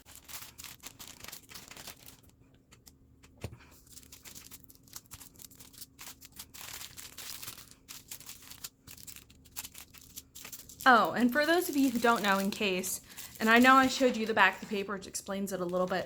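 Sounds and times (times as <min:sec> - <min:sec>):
plastic bags crinkling: 0:00.0 - 0:03.0, 0:03.6 - 0:16.0.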